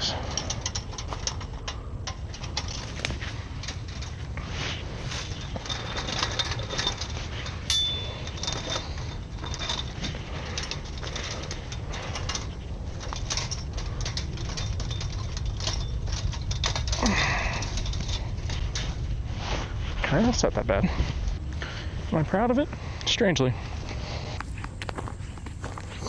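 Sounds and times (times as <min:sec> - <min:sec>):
metallic clicking and rattling: 0:00.0 - 0:19.2.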